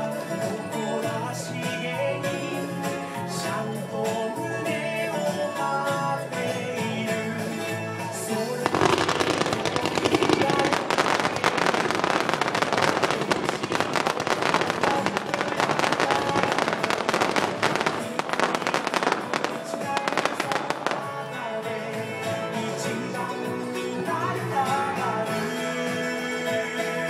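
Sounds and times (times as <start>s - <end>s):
loud music with melody: 0.0s - 27.0s
fireworks crackling and popping: 7.2s - 22.5s.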